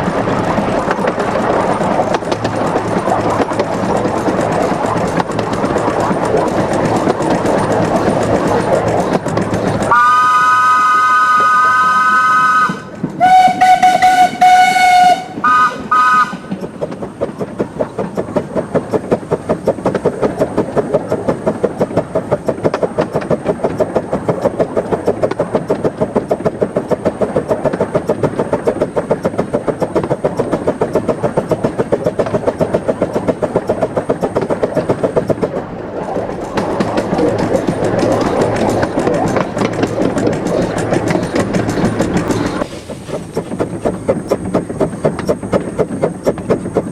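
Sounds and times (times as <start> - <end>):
steam locomotive rhythmic chuffing: 0.0 - 46.9
steam locomotive whistle: 9.9 - 16.5.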